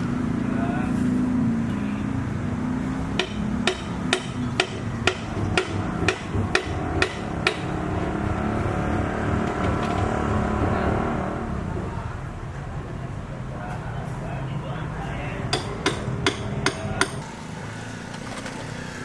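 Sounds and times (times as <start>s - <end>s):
hammer blows with ringing note: 3.2s - 8.2s.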